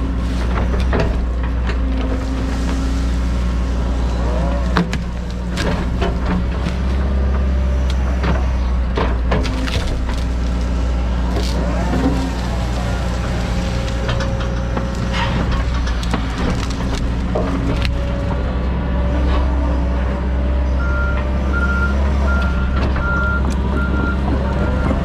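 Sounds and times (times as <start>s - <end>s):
hydraulic whine: 0.0s - 20.1s
excavator diesel engine running: 0.0s - 25.0s
trees cracking and knocking: 0.0s - 25.0s.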